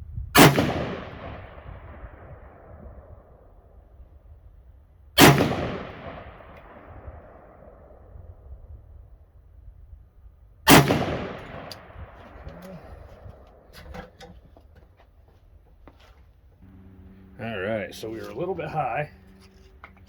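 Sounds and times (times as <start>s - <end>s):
rifle shots with echo: 0.4s - 3.8s, 5.2s - 8.6s, 10.7s - 13.8s.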